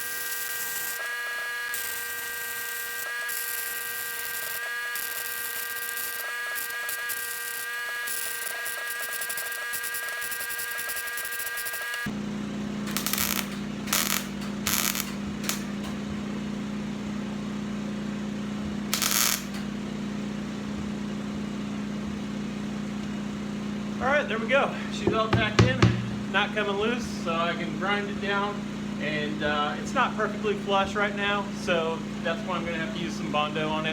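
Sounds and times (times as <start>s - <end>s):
short tack welds: 0.0s - 12.1s, 12.8s - 16.1s, 18.9s - 19.8s
electric welding buzzing: 0.0s - 12.2s, 12.8s - 16.2s, 18.9s - 19.8s
low steady hum: 24.0s - 28.6s.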